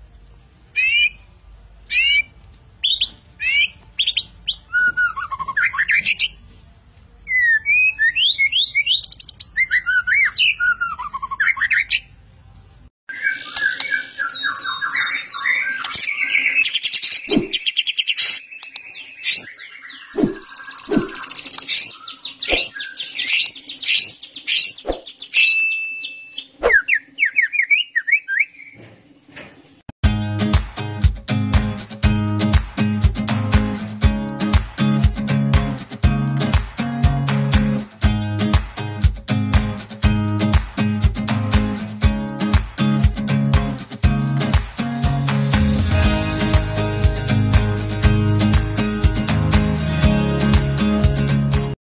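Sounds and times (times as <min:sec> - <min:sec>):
songbird whistles and trills: 0:01.9 - 0:06.4, 0:07.3 - 0:12.1, 0:13.1 - 0:28.8
strummed guitar music: 0:30.0 - 0:51.8.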